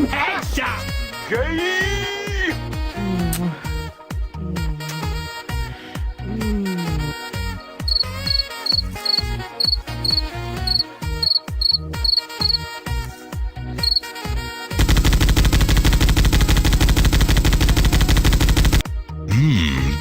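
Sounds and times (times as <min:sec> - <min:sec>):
musical beat with high chirps: 0:07.9 - 0:12.7, 0:13.8 - 0:14.1
rapid machine-gun fire: 0:14.8 - 0:18.9.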